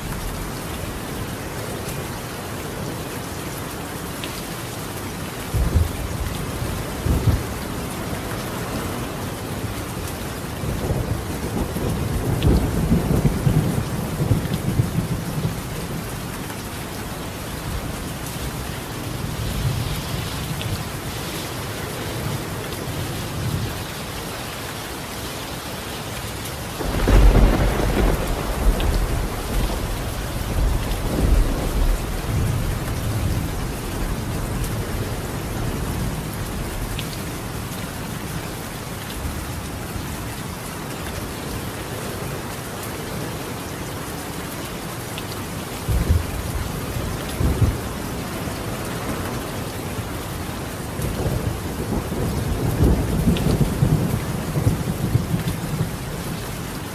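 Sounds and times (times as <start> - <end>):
rain on a tiled roof: 0.0 - 56.9
thunder rumbling: 10.6 - 16.1, 26.8 - 37.0.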